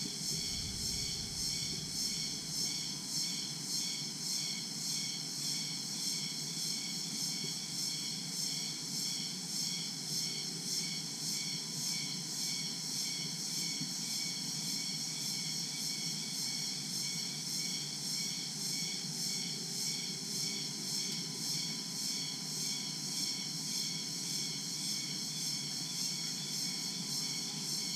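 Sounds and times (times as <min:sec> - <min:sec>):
crickets and insects trilling: 0:00.0 - 0:27.9
steady low rumble: 0:00.3 - 0:02.2.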